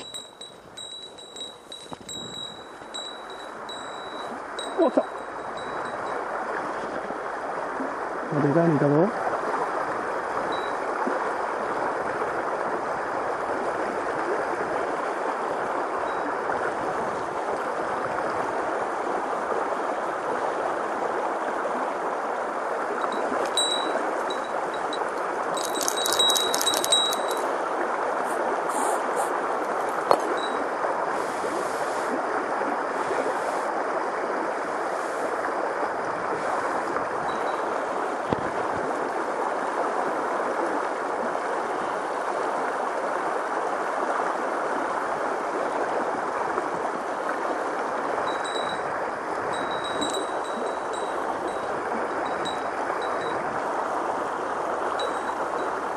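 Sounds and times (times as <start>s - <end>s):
high bell-like ringing: 0.0s - 6.2s, 23.1s - 25.0s, 25.6s - 27.5s
stream rushing: 0.0s - 55.9s.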